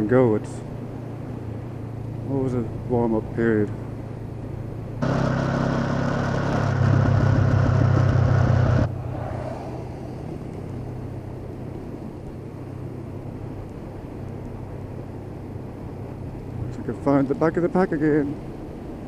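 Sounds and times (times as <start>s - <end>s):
road and wind noise: 0.0s - 19.0s
motorcycle engine running: 5.0s - 8.9s.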